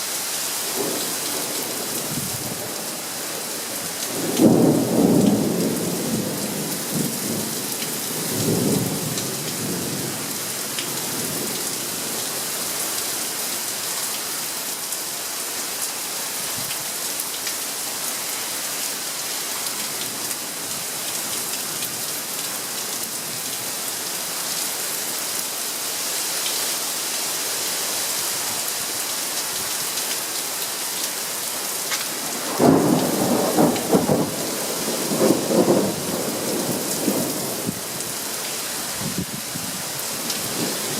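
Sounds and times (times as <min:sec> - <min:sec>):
steady rain: 0:00.0 - 0:40.9
thunder rumbling: 0:32.4 - 0:38.0.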